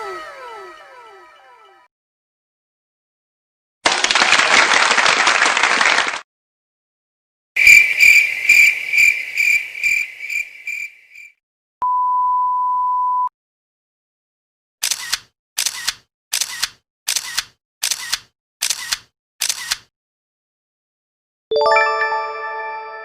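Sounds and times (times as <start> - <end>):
pulsing high ringing tone: 0.0 - 1.9
high-pitched censor bleep: 11.8 - 13.3.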